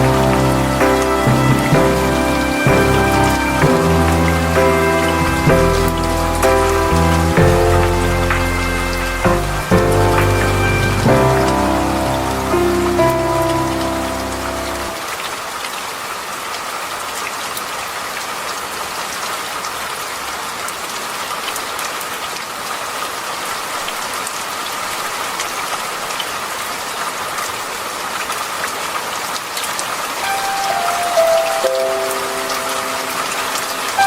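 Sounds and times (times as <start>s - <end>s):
soft music notes: 0.0s - 15.1s, 30.2s - 34.0s
steady rain falling: 0.0s - 34.0s.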